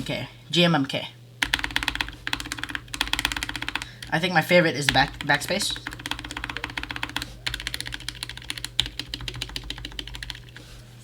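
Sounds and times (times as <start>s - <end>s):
mechanical keyboard clacking: 1.4s - 4.1s, 4.9s - 10.6s.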